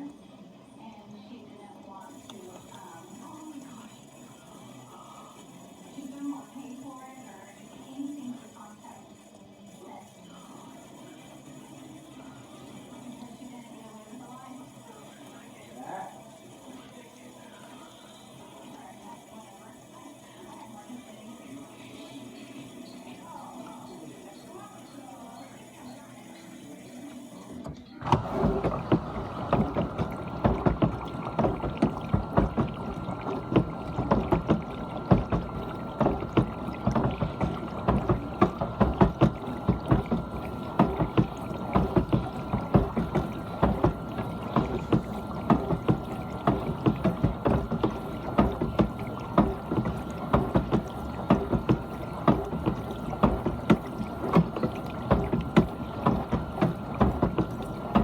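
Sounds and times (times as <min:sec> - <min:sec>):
dishwasher pump motor whine: 0:00.0 - 0:58.0
water spraying and splashing: 0:28.0 - 0:58.0.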